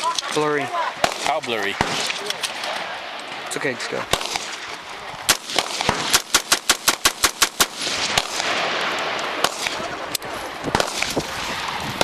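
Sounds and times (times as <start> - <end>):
rifle gunshots: 1.0 - 3.0, 4.1 - 4.7, 5.3 - 12.0.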